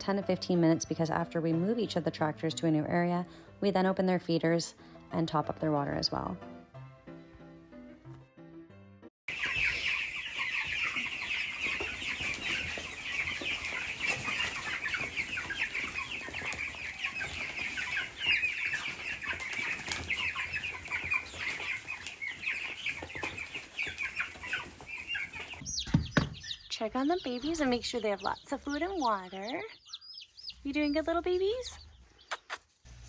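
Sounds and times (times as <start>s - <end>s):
chicks peeping: 9.3s - 32.8s.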